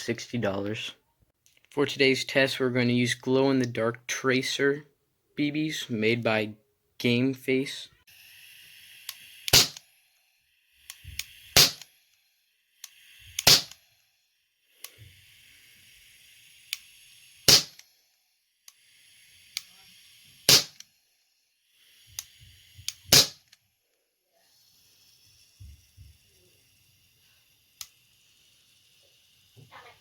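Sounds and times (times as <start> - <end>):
airsoft pistol shots: 9.5 - 9.8, 11.6 - 11.8, 13.4 - 13.8, 17.5 - 17.8, 20.5 - 20.8, 23.1 - 23.4.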